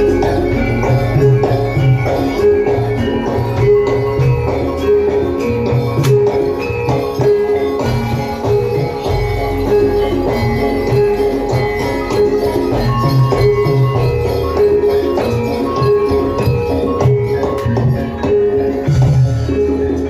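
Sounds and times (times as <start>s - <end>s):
jingling percussion: 0.0s - 20.0s
metallophone notes: 0.0s - 20.0s.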